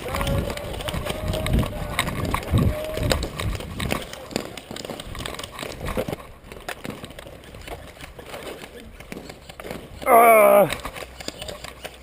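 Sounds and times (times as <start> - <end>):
faint crackles and rustling: 0.0 - 12.0
person yelling: 10.0 - 10.8.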